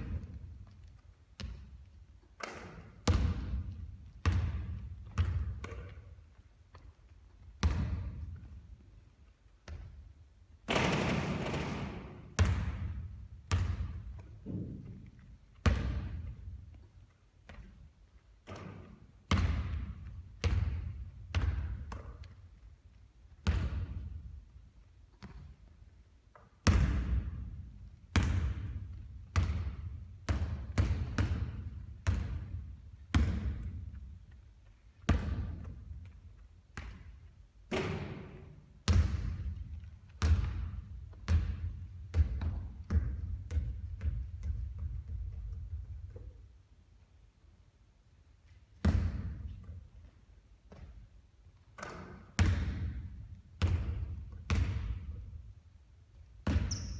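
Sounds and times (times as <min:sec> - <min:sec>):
basketballs bouncing on hard court: 0:00.0 - 0:06.2, 0:07.4 - 0:08.6, 0:09.6 - 0:10.1, 0:10.7 - 0:16.8, 0:17.4 - 0:22.6, 0:23.3 - 0:24.3, 0:25.1 - 0:25.6, 0:26.6 - 0:34.1, 0:35.0 - 0:46.4, 0:48.8 - 0:49.8, 0:51.8 - 0:55.5, 0:56.4 - 0:56.9.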